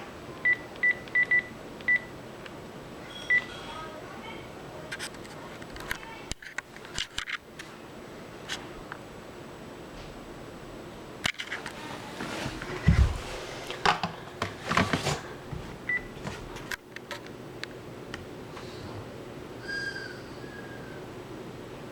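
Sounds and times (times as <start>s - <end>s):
rustling: 11.6s - 13.8s.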